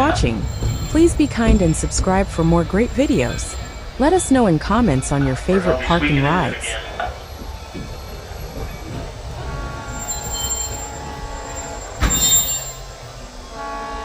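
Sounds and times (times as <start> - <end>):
train wheels rumbling on track: 0.0 - 14.0
faint high squeal: 9.8 - 13.6.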